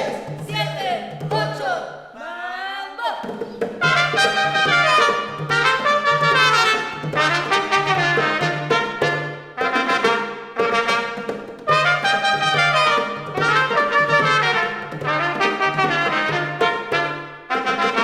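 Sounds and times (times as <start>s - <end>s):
brass band playing: 3.8s - 18.0s.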